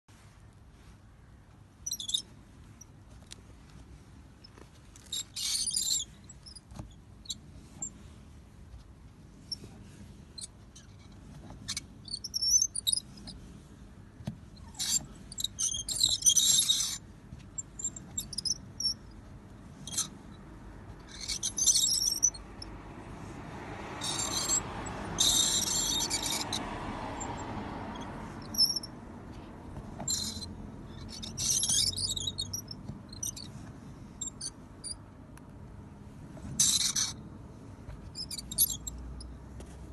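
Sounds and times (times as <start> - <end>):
wheel squeaking: 1.8 - 2.3, 4.9 - 8.0, 9.3 - 13.4, 14.6 - 22.8, 23.9 - 33.6, 36.4 - 37.3, 38.0 - 39.3.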